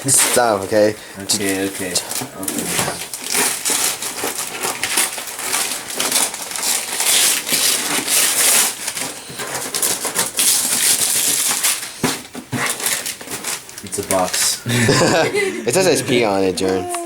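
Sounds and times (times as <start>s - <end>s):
wrapping paper tearing and rustling: 0.0s - 15.2s.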